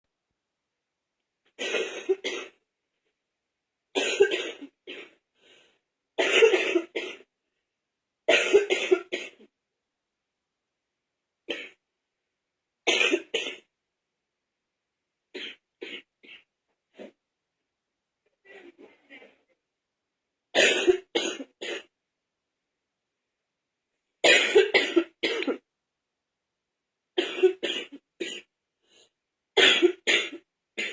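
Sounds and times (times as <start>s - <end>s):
woman wet chesty cough: 1.6s - 2.6s, 4.0s - 5.1s, 6.2s - 7.3s, 8.3s - 9.4s, 12.9s - 13.7s, 20.6s - 21.9s, 24.2s - 25.6s, 27.2s - 28.5s, 29.6s - 30.9s.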